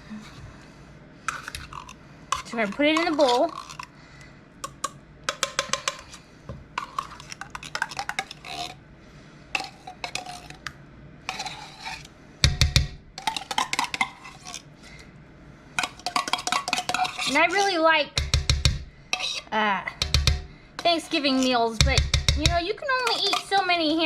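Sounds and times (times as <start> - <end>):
utensil scraping can and bowl: 1.3 - 4.0, 6.8 - 8.8, 9.6 - 10.7, 11.3 - 12.1, 13.2 - 14.7, 15.8 - 18.4, 19.1 - 24.0.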